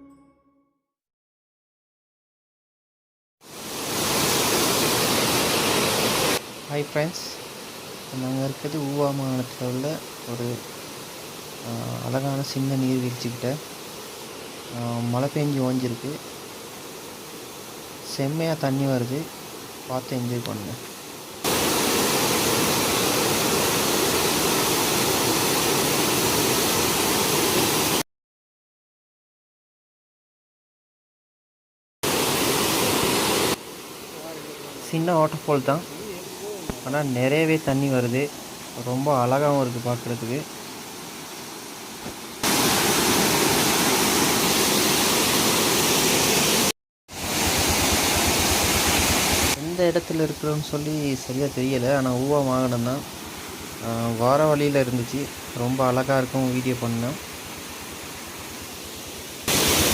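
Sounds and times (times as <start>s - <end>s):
waterfall rushing: 3.5s - 7.0s, 21.4s - 28.0s, 32.0s - 59.9s.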